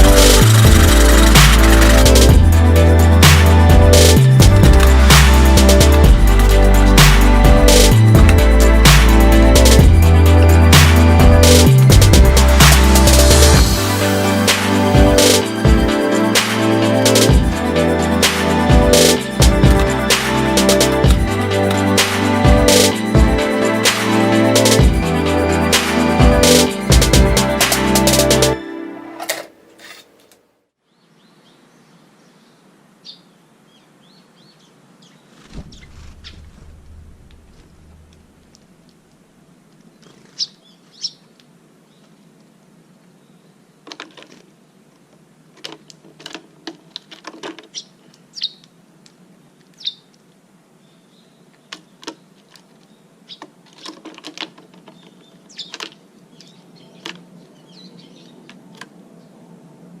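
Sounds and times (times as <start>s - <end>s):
small birds chirping: 30.8s - 36.5s, 39.8s - 42.3s, 47.7s - 48.8s, 49.6s - 50.2s, 50.8s - 53.6s, 54.8s - 59.4s.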